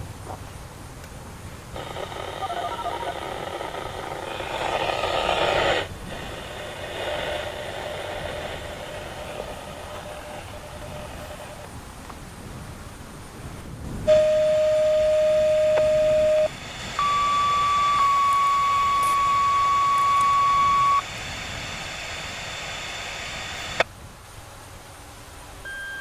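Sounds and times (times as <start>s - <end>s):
outdoor warning siren pulsing: 1.8s - 5.0s, 14.1s - 23.8s.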